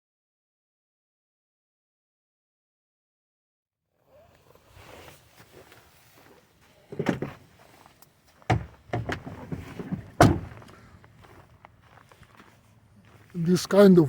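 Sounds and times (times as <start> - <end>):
sharp knocks and thuds: 8.5 - 10.7.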